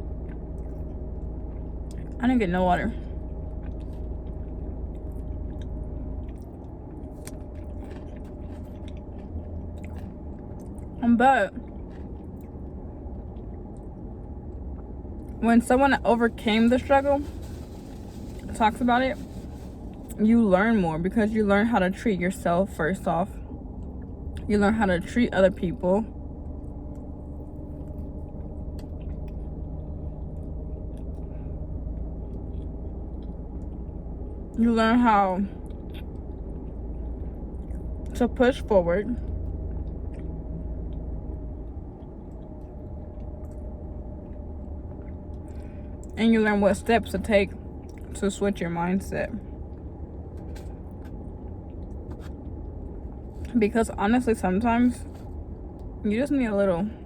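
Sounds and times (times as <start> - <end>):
person chewing food: 0.0 - 2.2, 3.1 - 11.0, 11.6 - 15.4, 26.4 - 34.6, 39.2 - 46.2, 47.5 - 48.2
low rumble: 0.0 - 57.0
steady low hum: 0.0 - 57.0.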